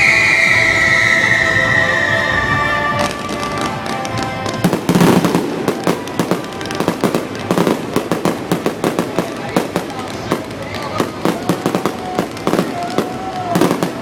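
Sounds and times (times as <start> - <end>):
fireworks bangs and crackles: 0.0 - 14.0.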